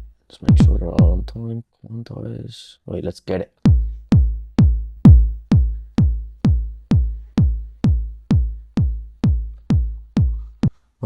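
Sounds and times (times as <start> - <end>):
electronic kick drum loop: 0.0 - 1.4, 3.7 - 10.8.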